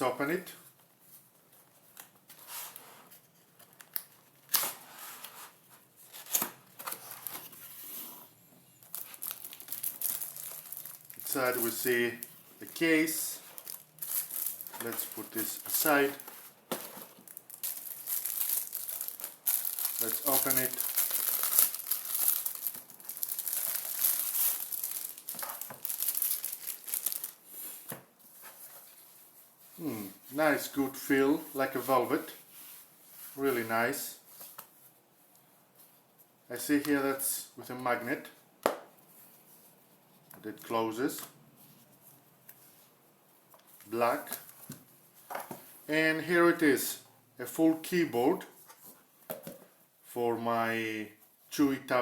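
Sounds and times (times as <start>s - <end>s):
packaging rustling: 8.8s - 29.0s.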